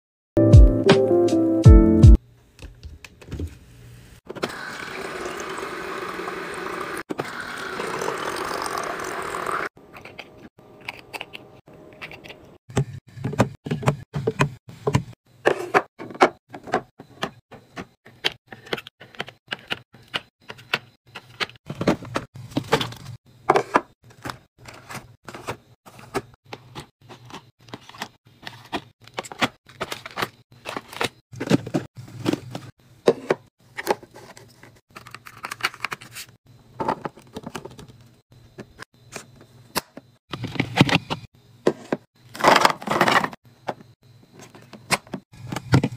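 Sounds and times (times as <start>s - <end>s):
liquid pouring: 4.6s - 9.7s
groceries being handled: 21.1s - 38.1s.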